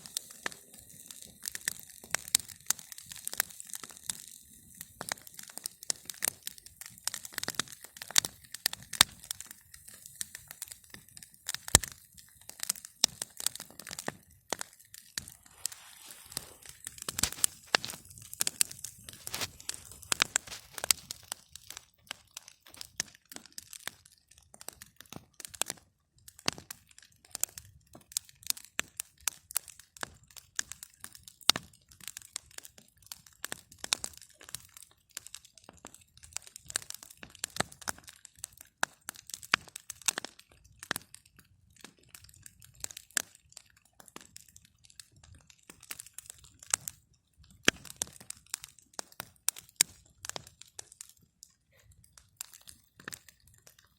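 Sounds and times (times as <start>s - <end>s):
campfire crackling and popping: 0.0s - 53.9s.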